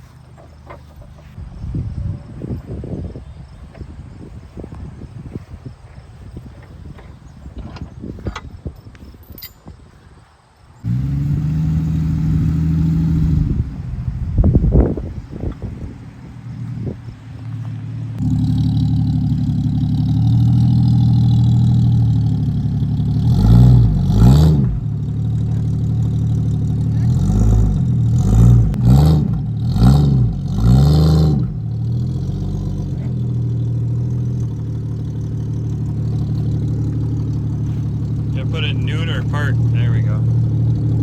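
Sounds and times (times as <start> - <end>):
vehicle engine running and revving: 10.8 - 41.0.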